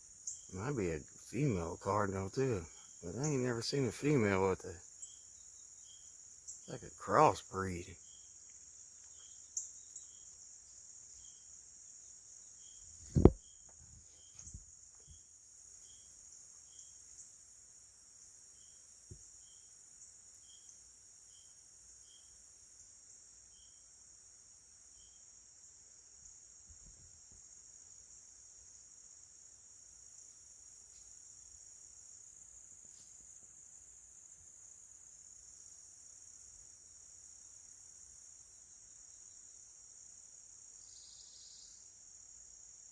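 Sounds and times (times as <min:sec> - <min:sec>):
crickets and insects chorus: 0:00.0 - 0:42.9
sharp thump: 0:13.1 - 0:13.4.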